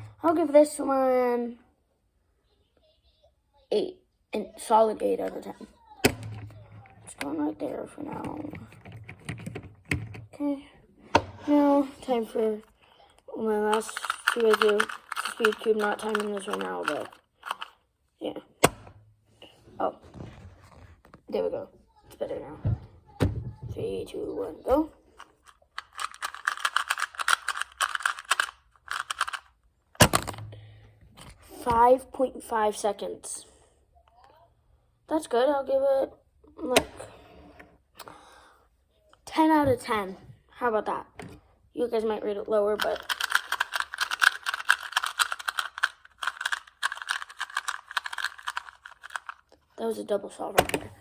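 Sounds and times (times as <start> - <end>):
speed cube plastic clicks: 13.7 - 17.8, 25.8 - 30.4, 42.9 - 49.4.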